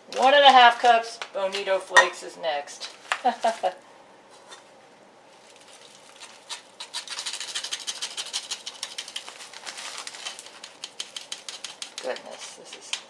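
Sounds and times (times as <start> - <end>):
bag rustling and crackling: 5.3 - 7.7, 8.6 - 11.3.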